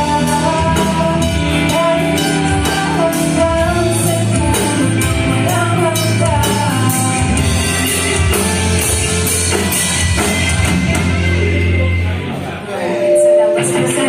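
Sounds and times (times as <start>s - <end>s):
person singing: 0.0s - 8.0s, 12.8s - 14.0s
drum kit: 0.0s - 14.0s
rock band playing live: 0.0s - 14.0s.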